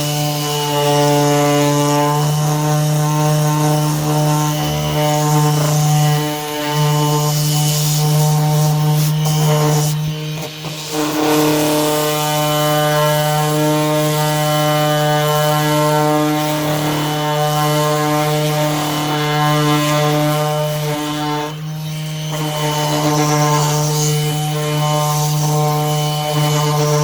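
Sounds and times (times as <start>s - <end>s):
cordless sander droning: 0.0s - 27.0s.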